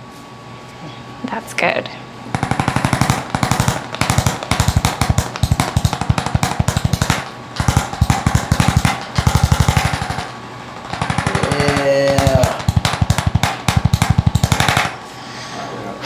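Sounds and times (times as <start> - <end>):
percussion massager pounding: 2.3 - 15.1.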